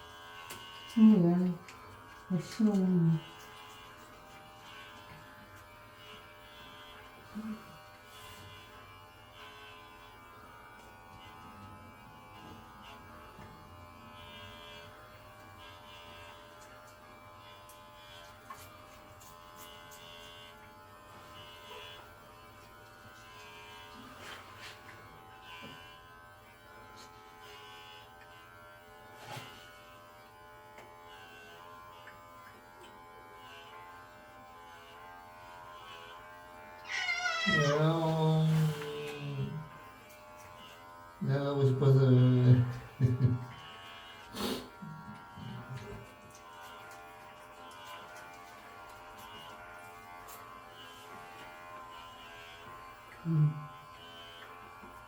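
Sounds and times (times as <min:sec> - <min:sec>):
electric clippers buzzing: 0:00.0 - 0:55.0
cat meowing loudly: 0:36.8 - 0:37.8.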